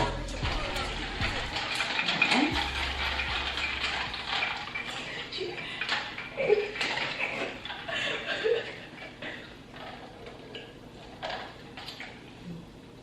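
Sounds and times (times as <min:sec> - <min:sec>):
low voices: 0:00.0 - 0:08.1
cups and kitchenware clinking: 0:00.0 - 0:12.2.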